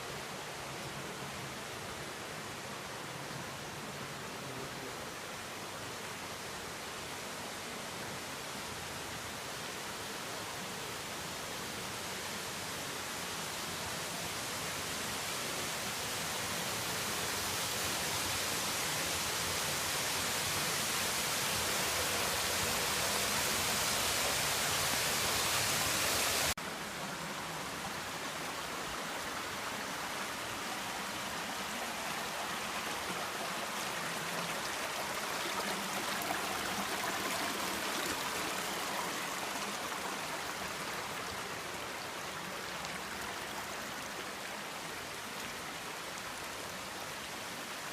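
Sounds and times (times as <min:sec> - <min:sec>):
waterfall rushing: 0:19.7 - 0:45.2.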